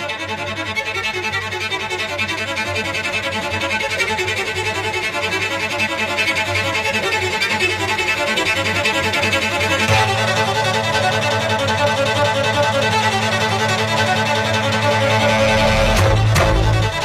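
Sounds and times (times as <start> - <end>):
background music: 9.6 - 17.0.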